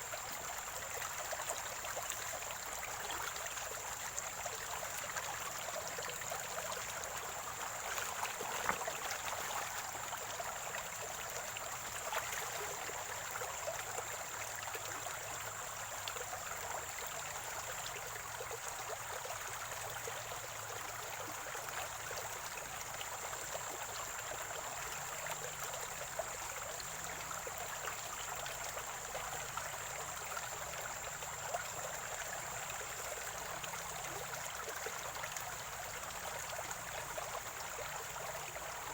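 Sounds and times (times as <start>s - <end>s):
stream trickling over stones: 0.0s - 38.9s
water splashes: 5.2s - 10.7s.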